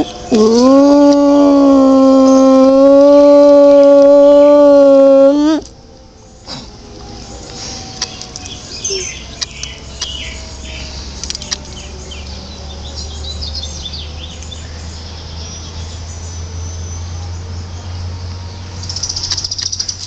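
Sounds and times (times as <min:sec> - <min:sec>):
distant siren: 0:00.0 - 0:14.4
birds chirping: 0:00.0 - 0:20.0.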